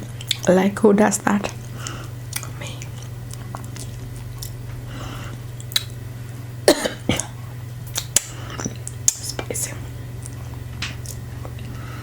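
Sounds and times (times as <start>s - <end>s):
wet chewing clicks: 0.0s - 0.5s, 1.4s - 4.6s, 5.3s - 6.0s, 7.9s - 9.5s, 10.2s - 10.4s, 11.0s - 11.7s
person coughing: 6.7s - 7.4s.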